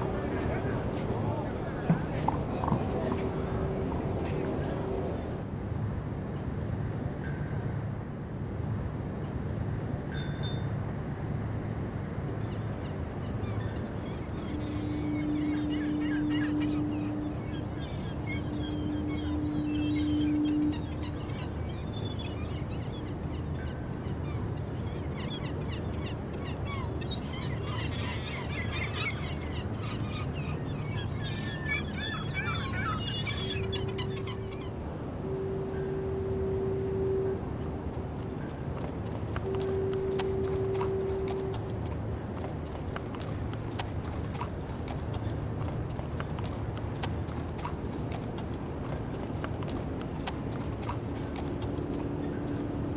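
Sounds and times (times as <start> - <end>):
birds chirping: 13.4 - 23.6, 24.2 - 34.8, 35.7 - 52.9
horn blasts: 18.2 - 21.3, 33.5 - 42.4.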